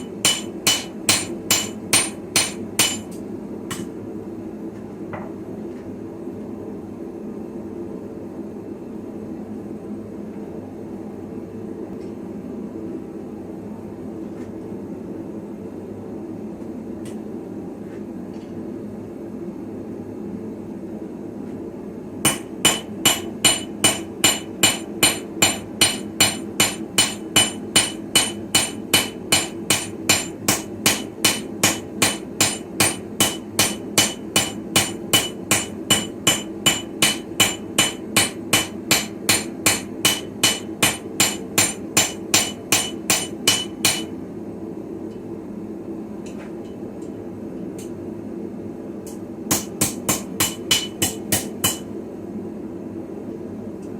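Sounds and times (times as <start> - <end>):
hammer blows ringing on anvil: 0.0 - 3.9, 22.3 - 44.1, 49.5 - 51.9.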